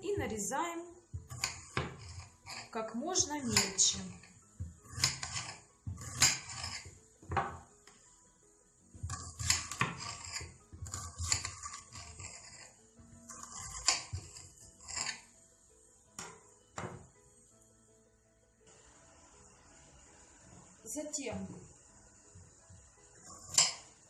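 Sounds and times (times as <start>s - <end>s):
knife chopping on cutting board: 1.2s - 2.3s, 4.6s - 7.7s, 9.0s - 12.4s
knife scraping cutting board: 1.2s - 7.6s, 9.0s - 15.3s, 23.2s - 24.0s.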